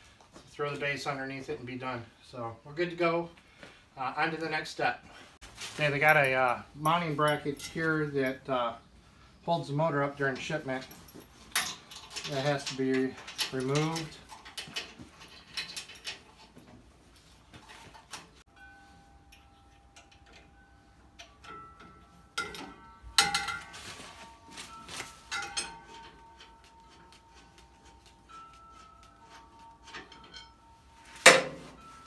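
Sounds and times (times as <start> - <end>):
metal clinks and knocks: 5.6 - 8.2, 10.3 - 32.0.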